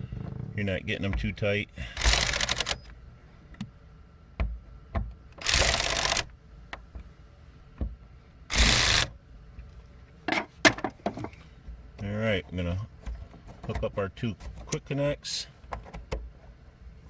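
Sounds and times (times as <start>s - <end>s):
power screwdriver driving screws: 2.0s - 2.8s, 5.4s - 6.3s, 8.5s - 9.1s.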